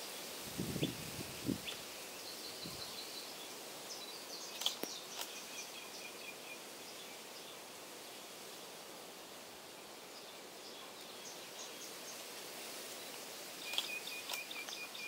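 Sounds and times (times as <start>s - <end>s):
steady outdoor hiss: 0.0s - 15.0s
small birds chirping: 0.6s - 7.8s, 10.1s - 15.0s
sharp clicks: 4.6s - 5.4s, 13.7s - 14.8s.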